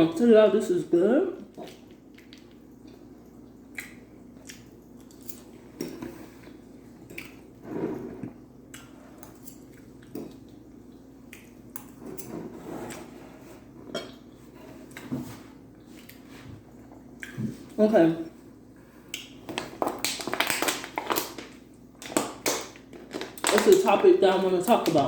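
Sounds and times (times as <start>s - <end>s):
eating sounds: 1.4s - 5.5s.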